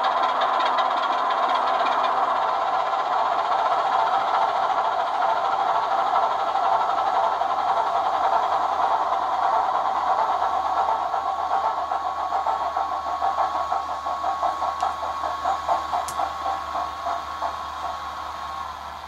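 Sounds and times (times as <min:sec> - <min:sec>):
model locomotive diesel engine sound: 0:00.0 - 0:19.0.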